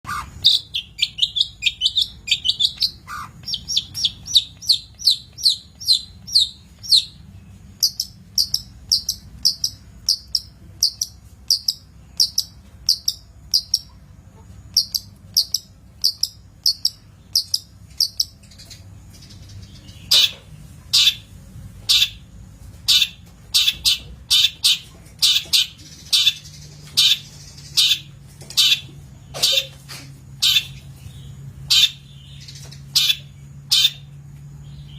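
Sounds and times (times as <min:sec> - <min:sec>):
bird chirping calls: 0:00.0 - 0:34.9.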